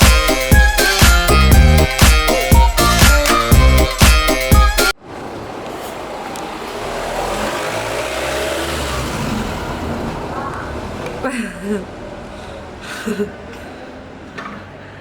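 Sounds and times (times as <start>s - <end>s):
background music: 0.0s - 5.0s
road traffic noise: 0.0s - 15.0s.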